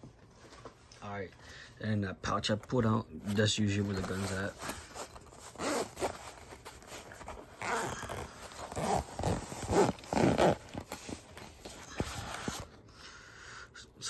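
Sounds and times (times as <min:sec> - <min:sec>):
zipper pulled open: 0:03.8 - 0:12.7.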